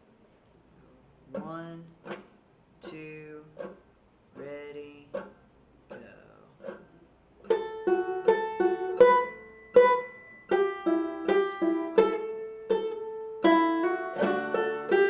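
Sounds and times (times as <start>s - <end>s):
banjo plucking a tune: 4.5s - 15.0s.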